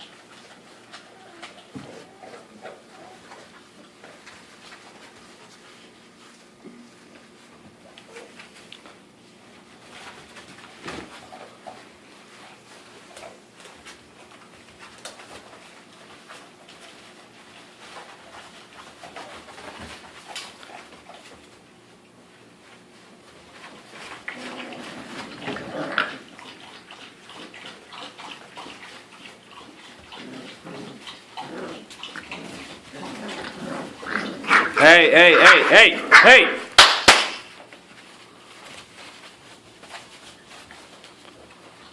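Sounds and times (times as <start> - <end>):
scuffling and clicking noises: 0.0 - 34.8, 36.8 - 41.9
light scuffling and clicks: 37.6 - 41.9.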